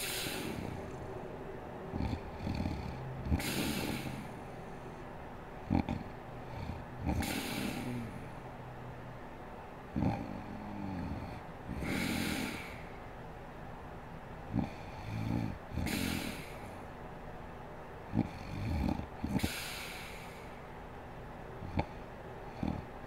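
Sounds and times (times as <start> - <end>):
woman snoring: 0.0 - 1.1, 1.9 - 4.7, 5.7 - 8.4, 10.0 - 12.9, 14.5 - 16.8, 18.1 - 20.4, 21.6 - 23.0.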